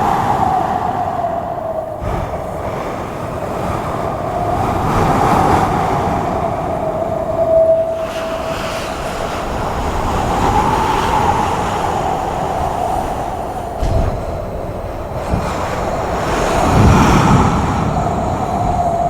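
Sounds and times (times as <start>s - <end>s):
wavering whine: 5.9s - 14.8s.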